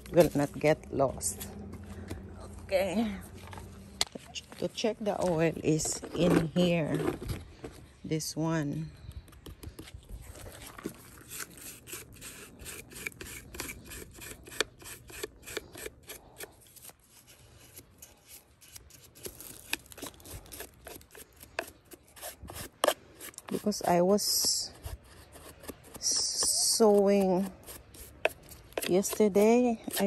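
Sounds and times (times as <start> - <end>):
scraping and rubbing on chainsaw: 10.4 - 30.0.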